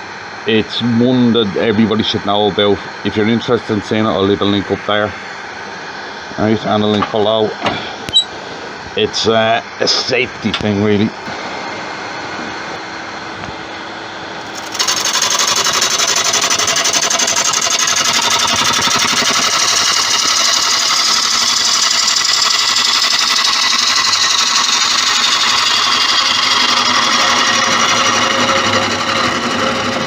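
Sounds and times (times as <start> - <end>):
lathe motor hum: 11.0 - 30.0
lathe tool cutting wood: 14.4 - 30.0.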